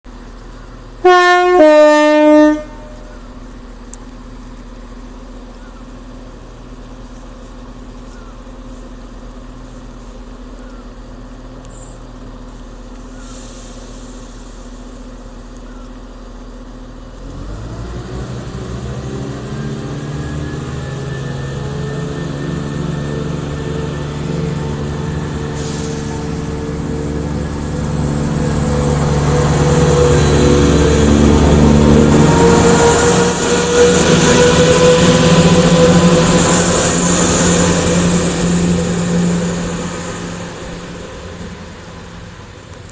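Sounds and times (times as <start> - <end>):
diesel train engines idling and powering up: 0.1 - 42.9
two-tone train horn: 1.0 - 3.2, 20.0 - 41.1.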